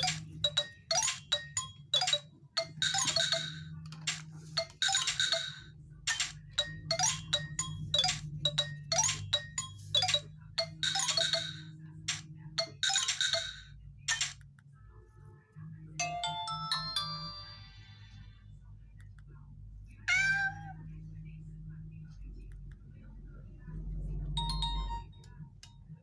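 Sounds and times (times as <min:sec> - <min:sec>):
ringtone chime melody: 0:00.0 - 0:03.8, 0:06.6 - 0:11.7, 0:12.6 - 0:13.6, 0:16.0 - 0:18.3, 0:24.4 - 0:25.3.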